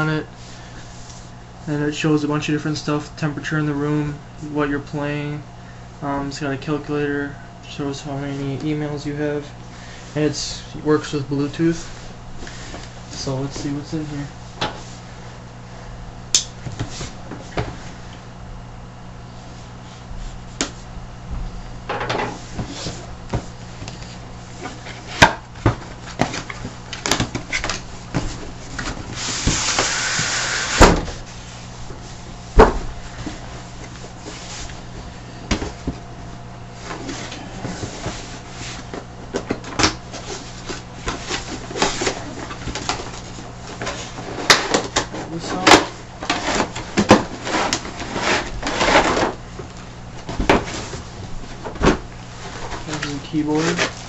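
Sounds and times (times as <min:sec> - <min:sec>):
steady low hum: 0:00.0 - 0:54.0
cardboard scraping: 0:22.3 - 0:36.0, 0:36.8 - 0:54.0.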